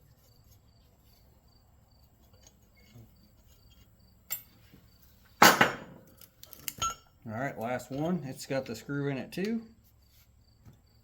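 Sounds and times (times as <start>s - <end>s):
metal parts clattering on bench: 5.4s - 8.1s.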